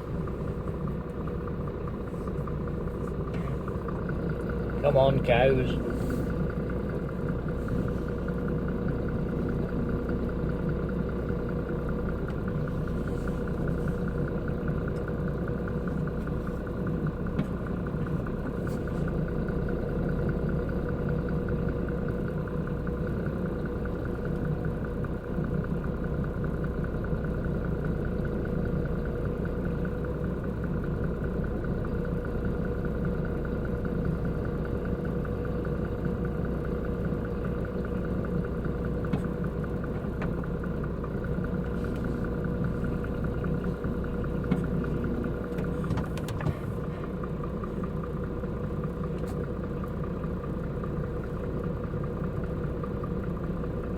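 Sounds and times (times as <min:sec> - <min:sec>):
diesel truck engine idling: 0:00.0 - 0:53.9.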